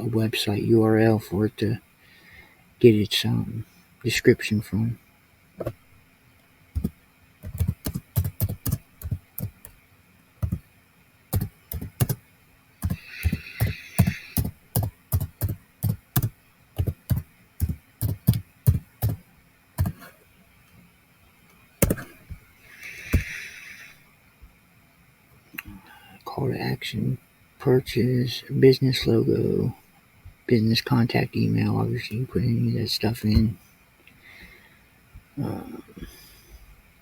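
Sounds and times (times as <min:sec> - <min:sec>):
keyboard typing clicks: 0:06.8 - 0:09.8, 0:11.3 - 0:12.2, 0:12.8 - 0:19.2, 0:19.8 - 0:20.1, 0:21.8 - 0:22.0.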